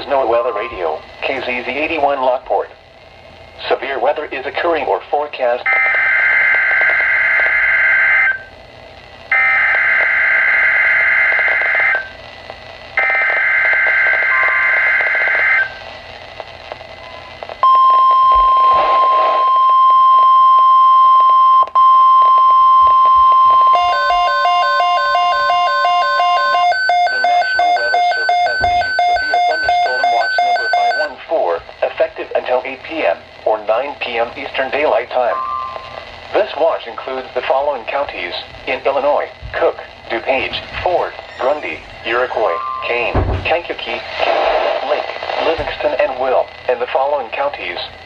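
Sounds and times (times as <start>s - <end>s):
steady warning alarm tone: 5.7s - 8.5s, 9.3s - 12.1s, 13.0s - 15.8s, 17.0s - 31.2s, 35.3s - 36.0s, 40.4s - 44.0s
two-pitch electronic beeping: 17.1s - 31.1s, 35.3s - 35.9s, 41.2s - 43.2s
warbling data tones: 22.2s - 31.1s, 35.3s - 36.0s, 40.3s - 44.5s.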